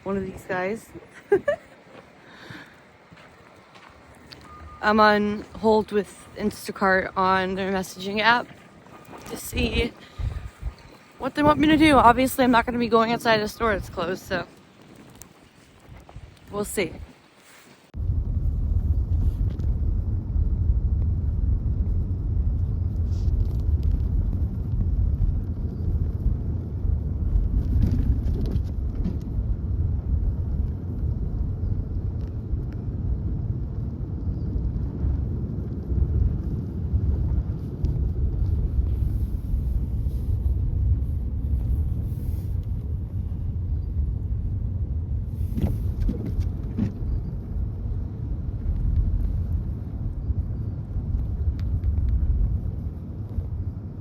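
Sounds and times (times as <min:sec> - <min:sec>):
road noise: 0:00.0 - 0:33.4
car engine rumble: 0:17.9 - 0:54.0.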